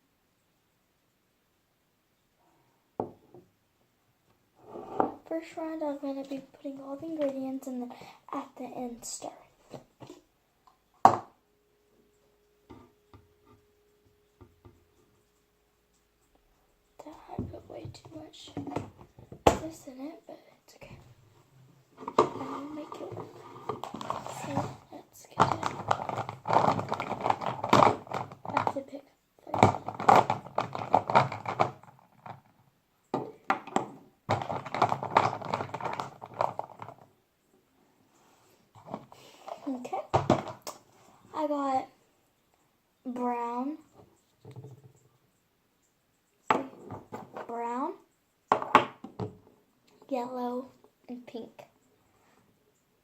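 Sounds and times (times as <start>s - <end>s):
faint steady hum: 0.0s - 53.0s
taps and knocks on a table: 11.0s - 11.3s
hands rummaging through small items: 22.0s - 28.8s, 34.3s - 37.1s.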